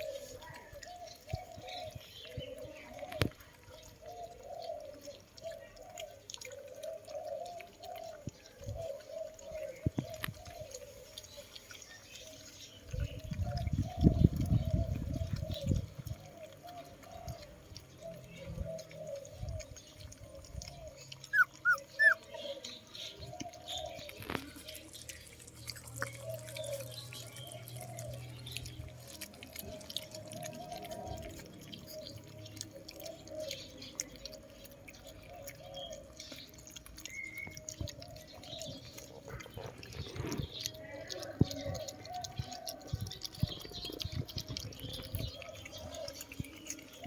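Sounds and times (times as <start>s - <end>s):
puppies whimpering and whining: 0.0s - 47.0s
high puppy squeaks: 21.0s - 22.5s.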